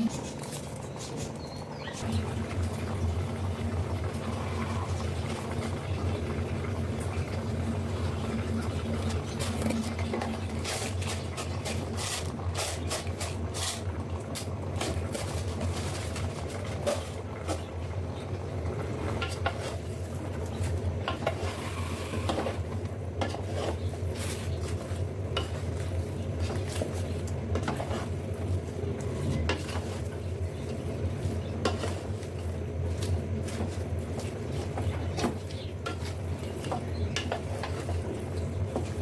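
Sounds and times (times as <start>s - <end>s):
spoon scraping metal pot: 21.1s - 25.7s.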